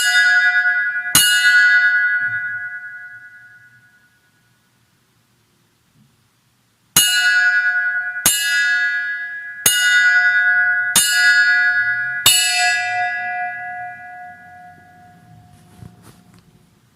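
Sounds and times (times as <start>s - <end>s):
bell ringing strikes: 0.0s - 4.1s, 7.0s - 15.8s.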